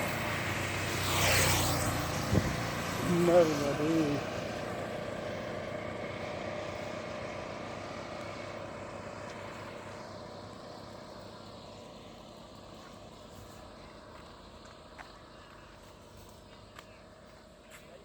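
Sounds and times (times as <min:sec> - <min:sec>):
vehicle engine running: 0:00.0 - 0:18.0.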